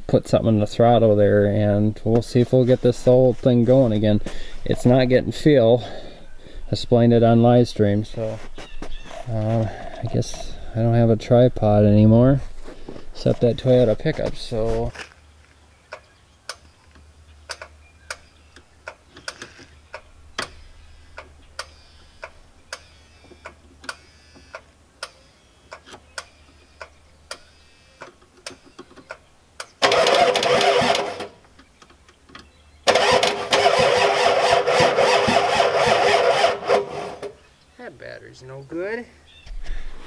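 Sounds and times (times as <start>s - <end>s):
starter cranking diesel engine: 29.8s - 31.4s, 32.8s - 37.4s.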